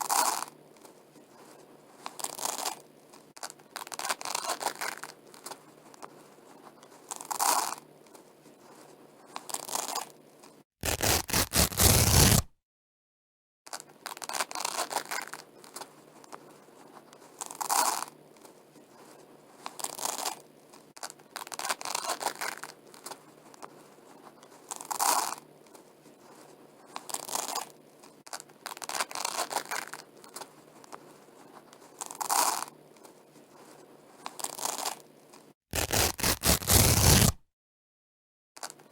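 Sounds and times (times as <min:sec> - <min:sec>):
velcro ripping apart: 0:10.8 - 0:12.5, 0:35.7 - 0:37.4.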